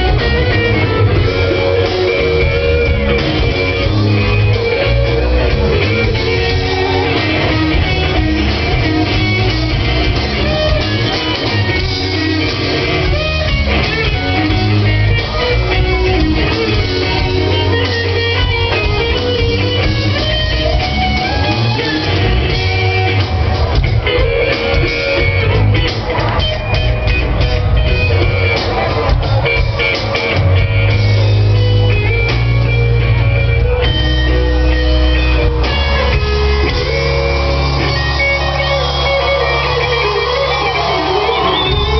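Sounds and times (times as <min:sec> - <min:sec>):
electric guitars: 0:00.0 - 0:41.9
live rock band playing: 0:00.0 - 0:41.9.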